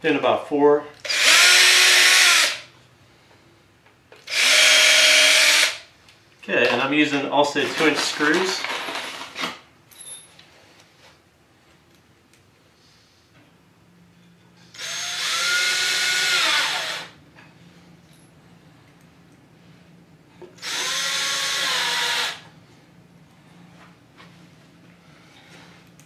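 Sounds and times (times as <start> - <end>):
cordless drill driving screws: 1.0 - 2.6, 4.2 - 5.8, 14.8 - 17.1, 20.6 - 22.4.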